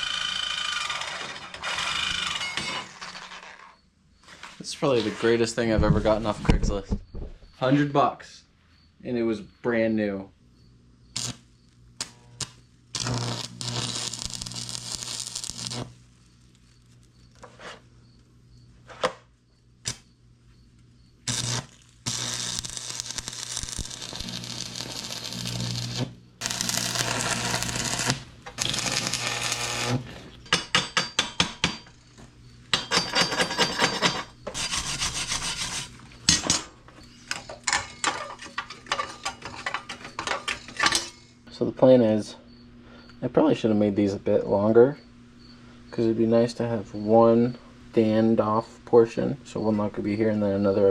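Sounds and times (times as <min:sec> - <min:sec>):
electric welder crackling: 0:00.0 - 0:03.8, 0:11.1 - 0:17.4, 0:19.8 - 0:20.1, 0:21.2 - 0:30.4, 0:34.5 - 0:36.4
low electrical hum: 0:00.0 - 0:50.9.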